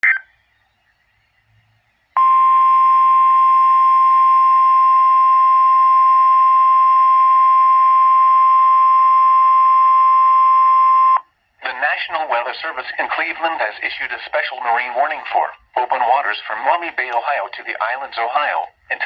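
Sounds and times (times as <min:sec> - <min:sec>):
steady high-pitched alarm tone: 0:02.2 - 0:11.2
radio hiss: 0:11.6 - 0:19.0.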